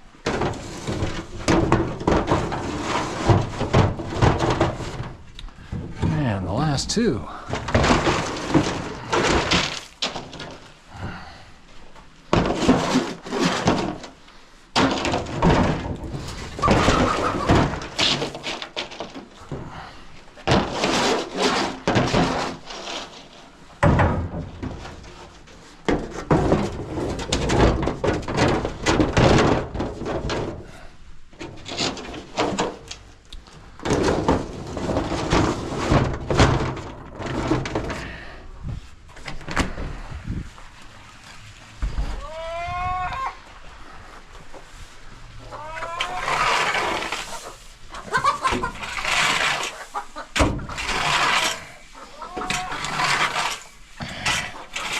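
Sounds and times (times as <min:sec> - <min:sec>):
metal scraper scraping: 0:46.0 - 0:51.8, 0:52.4 - 0:54.9.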